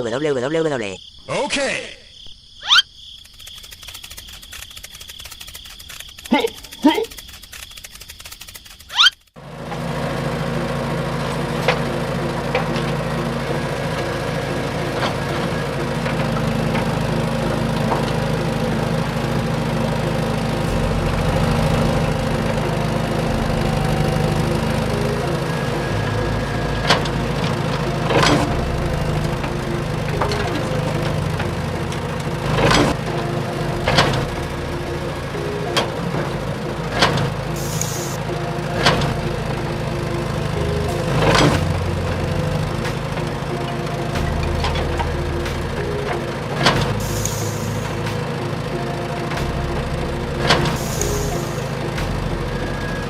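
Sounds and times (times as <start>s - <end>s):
sharp clicks and knocks: 3.2s - 9.4s
small motor running: 3.2s - 53.0s.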